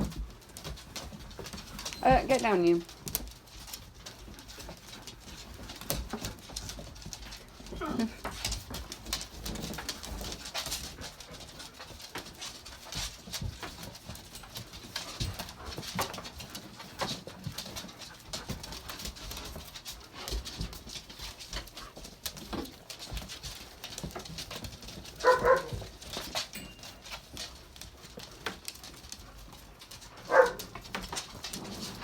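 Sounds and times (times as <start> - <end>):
dog whimpering: 7.6 - 8.2.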